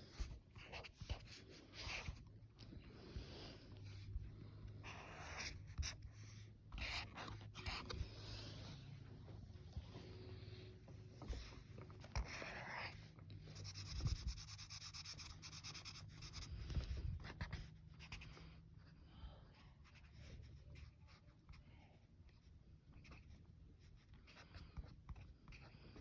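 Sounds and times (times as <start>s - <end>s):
coloring strokes on paper: 11.3s - 16.7s.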